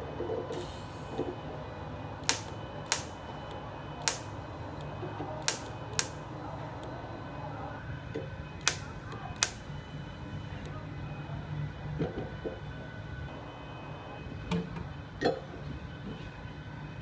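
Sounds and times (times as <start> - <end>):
welding machine humming: 2.1 - 6.9, 8.6 - 10.6
sharp metallic clicks: 2.2 - 4.4, 5.4 - 6.2, 8.6 - 9.7.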